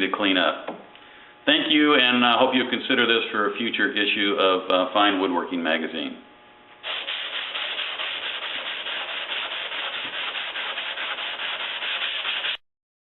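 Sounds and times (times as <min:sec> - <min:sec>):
sandpaper sanding wood: 0:06.8 - 0:12.6.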